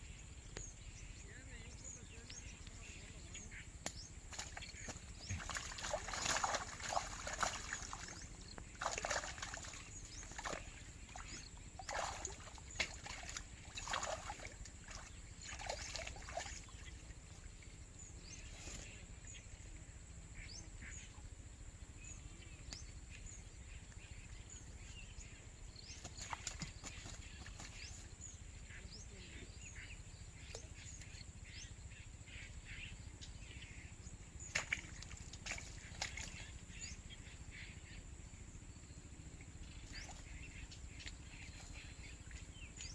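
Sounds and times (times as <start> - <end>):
water sloshing and splashing: 4.1 - 19.1, 25.8 - 28.2, 34.4 - 37.7, 39.3 - 42.9.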